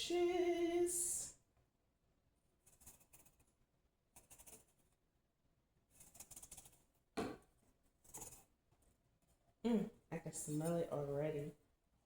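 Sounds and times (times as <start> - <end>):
soft knock: 7.2 - 7.4.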